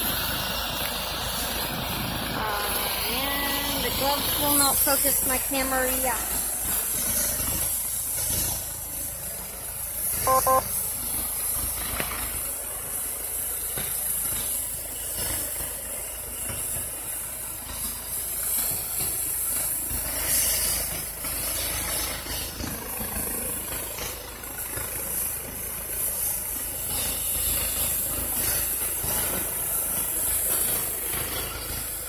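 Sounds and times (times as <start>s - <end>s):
engines idling: 0.0s - 32.0s
short electronic beeps: 10.3s - 10.6s.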